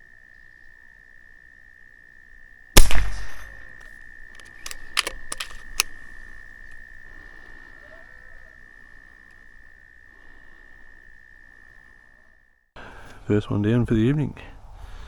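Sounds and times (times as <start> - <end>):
air rifle shot: 2.8 - 3.7.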